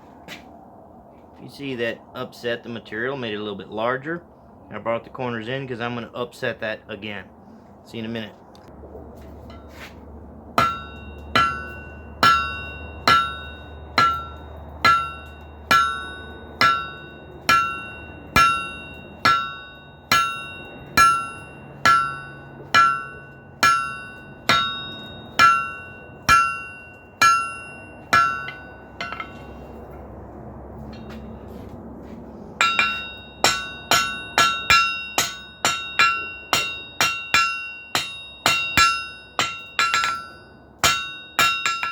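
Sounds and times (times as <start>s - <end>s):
hammer blows on steel over anvil: 10.6s - 30.0s, 32.6s - 41.9s.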